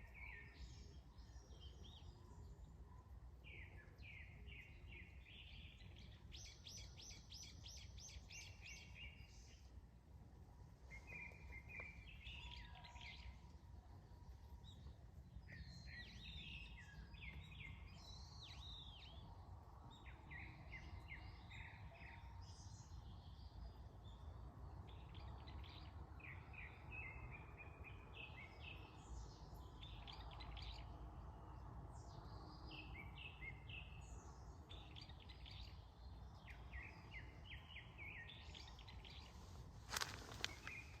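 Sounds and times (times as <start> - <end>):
songbirds chirping: 0.0 - 41.0.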